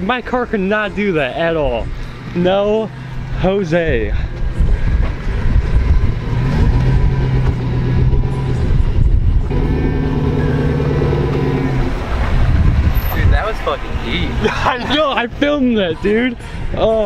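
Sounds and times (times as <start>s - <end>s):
truck engine running under load: 4.3s - 12.7s.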